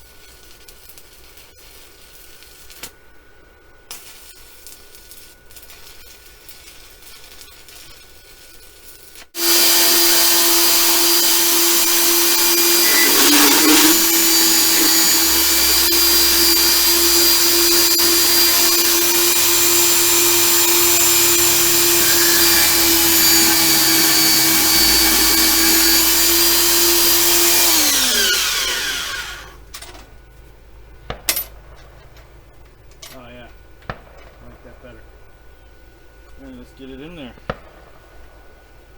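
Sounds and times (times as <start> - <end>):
angle grinder grinding metal: 9.4 - 29.6.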